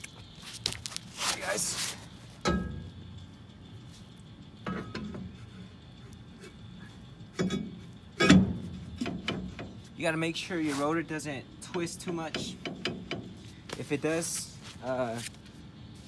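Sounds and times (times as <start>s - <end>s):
metallic clanks of brake parts: 2.4s - 3.0s, 4.6s - 5.6s, 6.4s - 9.9s, 11.6s - 13.8s.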